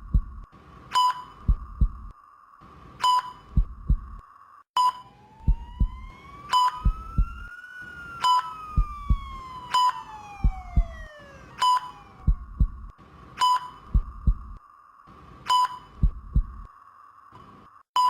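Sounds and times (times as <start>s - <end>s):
heartbeat thump: 0.0s - 0.5s, 1.4s - 2.1s, 3.4s - 4.2s, 5.4s - 7.5s, 8.6s - 9.5s, 10.2s - 13.0s, 13.8s - 14.6s, 15.9s - 16.7s
steady high hum: 0.0s - 16.9s
patient monitor beeps: 0.9s - 2.0s, 3.0s - 4.1s, 4.8s - 12.8s, 13.4s - 14.6s, 15.5s - 16.6s
siren wailing: 4.9s - 12.9s.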